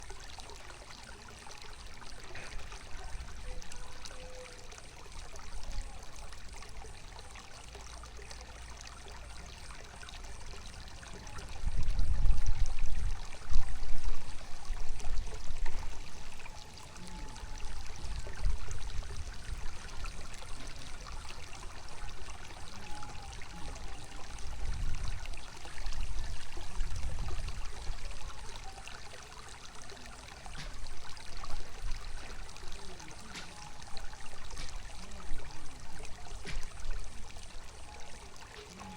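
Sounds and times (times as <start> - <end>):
water falling and splashing: 14.1 - 38.9.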